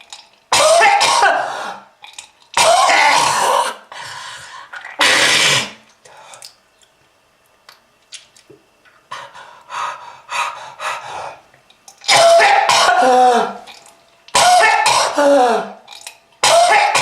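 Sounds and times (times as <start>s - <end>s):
person coughing: 0.5s - 1.9s, 2.6s - 3.8s, 12.1s - 13.7s, 14.3s - 15.8s, 16.4s - 17.0s.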